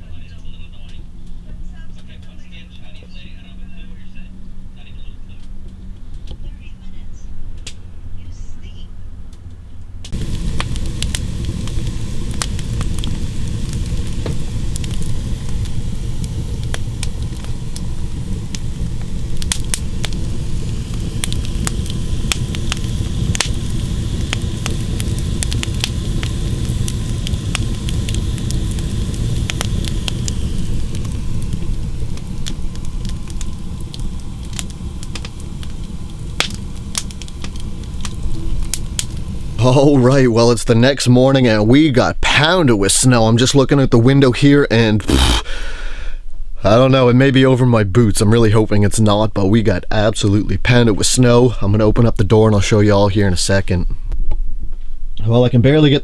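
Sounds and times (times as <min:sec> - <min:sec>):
wood fire crackling and popping: 0:10.0 - 0:41.0, 0:45.0 - 0:45.6.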